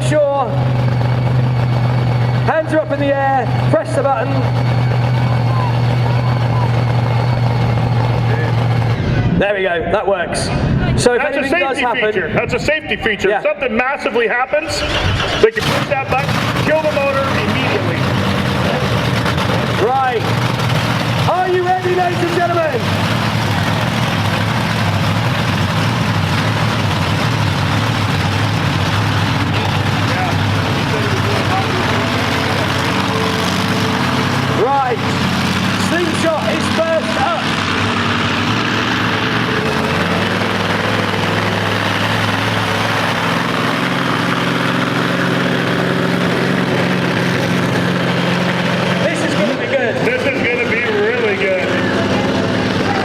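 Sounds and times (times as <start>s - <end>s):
truck engine idling: 0.0s - 9.8s, 10.7s - 53.0s.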